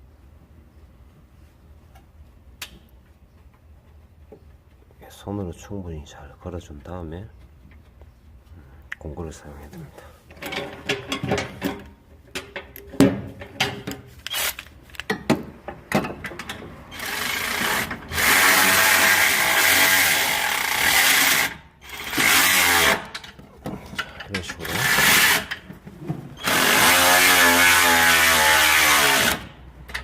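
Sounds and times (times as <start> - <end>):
power tool running: 14.3 - 14.7, 16.9 - 23.1, 24.6 - 25.6, 26.4 - 29.5.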